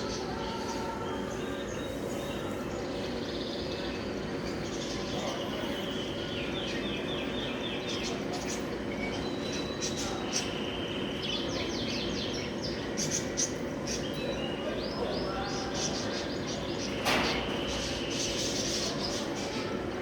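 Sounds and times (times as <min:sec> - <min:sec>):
birds chirping: 0:00.0 - 0:19.9.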